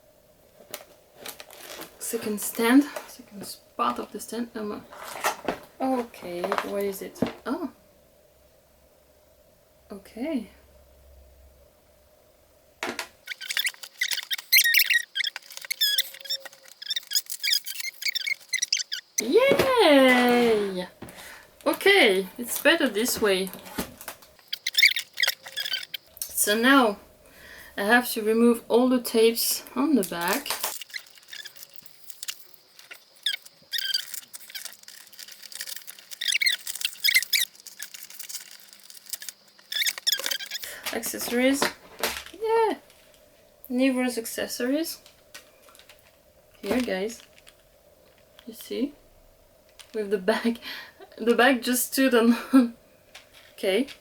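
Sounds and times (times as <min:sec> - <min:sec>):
plastic packaging crinkling: 0:00.6 - 0:02.7, 0:04.9 - 0:07.0, 0:13.2 - 0:21.4, 0:22.4 - 0:26.0, 0:30.0 - 0:43.2, 0:45.0 - 0:48.6
tape peeling off packaging: 0:30.2 - 0:40.7.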